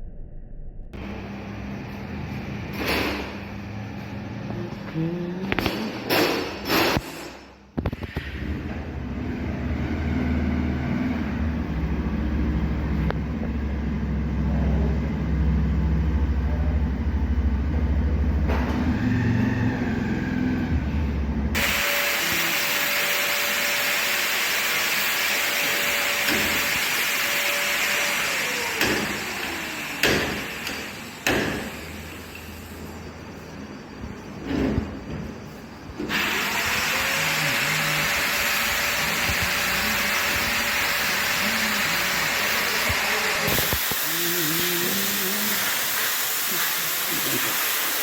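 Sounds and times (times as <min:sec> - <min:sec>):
loud hiss with thin whine: 0:37.2 - 0:48.0.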